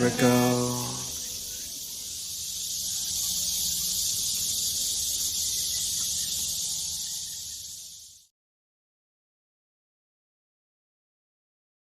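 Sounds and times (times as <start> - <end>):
insect chorus buzzing: 0.0 - 8.3.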